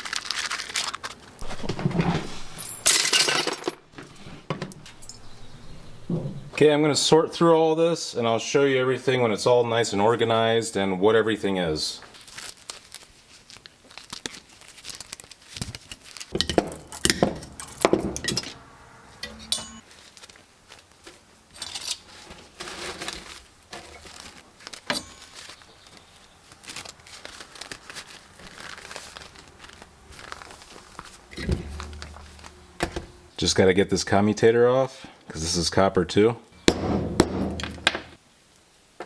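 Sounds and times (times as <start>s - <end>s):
crinkling: 0.0s - 2.9s, 12.0s - 18.8s, 19.8s - 33.6s
scrap metal parts clinking: 0.3s - 5.2s, 14.9s - 19.9s, 21.5s - 25.7s, 29.7s - 33.2s.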